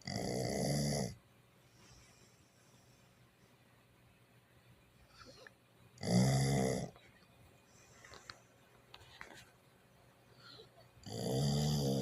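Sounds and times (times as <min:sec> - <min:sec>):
dog snoring: 0:00.0 - 0:01.2, 0:06.0 - 0:07.0, 0:11.0 - 0:12.0.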